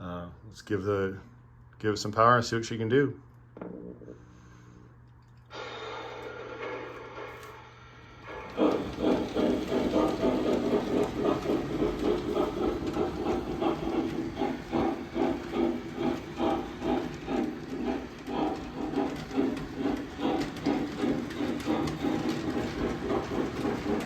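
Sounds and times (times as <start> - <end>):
model steam locomotive sounds: 5.5 - 24.0.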